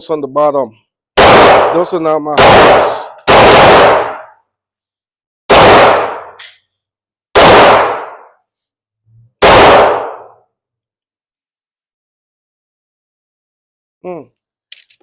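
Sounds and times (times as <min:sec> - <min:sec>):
pistol shots: 0:01.2 - 0:04.4, 0:05.5 - 0:06.5, 0:07.3 - 0:08.3, 0:09.4 - 0:10.4.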